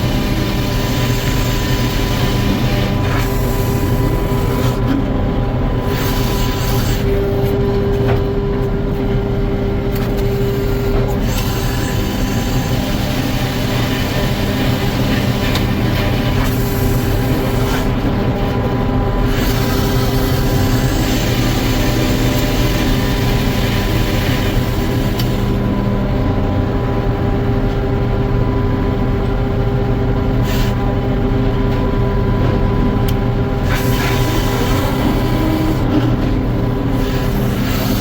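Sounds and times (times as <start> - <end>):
sawmill machinery droning: 0.0 - 38.0.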